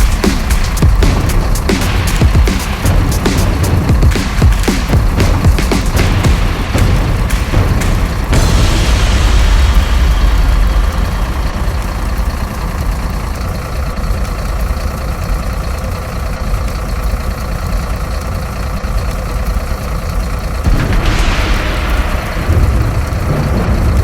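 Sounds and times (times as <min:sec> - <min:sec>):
heavy low rumble: 0:00.0 - 0:16.4, 0:20.3 - 0:24.0.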